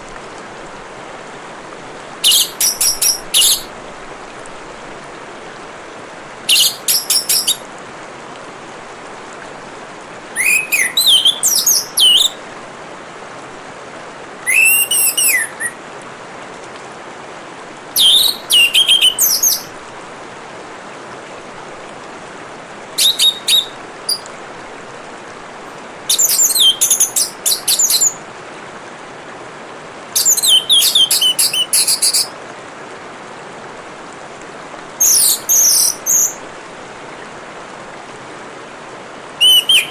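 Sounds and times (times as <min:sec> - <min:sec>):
water trickling: 0:02.0 - 0:05.0, 0:05.7 - 0:12.6, 0:14.4 - 0:15.8, 0:17.8 - 0:20.2, 0:21.8 - 0:28.2, 0:30.2 - 0:32.4, 0:34.7 - 0:36.6
thrush singing: 0:02.2 - 0:03.7, 0:06.5 - 0:07.6, 0:18.0 - 0:19.7, 0:23.0 - 0:24.2, 0:26.1 - 0:28.2, 0:39.4 - 0:39.9.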